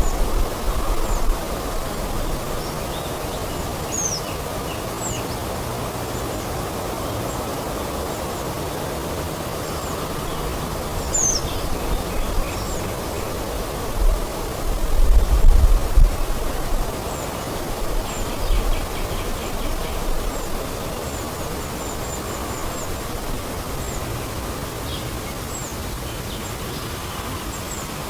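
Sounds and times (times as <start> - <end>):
small birds chirping: 0.0 - 5.5, 9.4 - 14.4, 16.0 - 28.0
steady rushing noise: 0.0 - 28.0.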